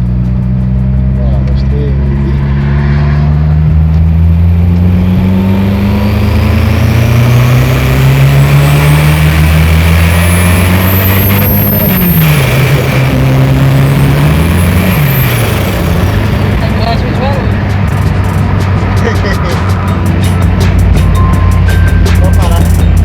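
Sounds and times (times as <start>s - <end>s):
turbocharged car engine accelerating: 0.0s - 23.0s
turbo whistle: 10.1s - 15.4s, 21.0s - 22.9s.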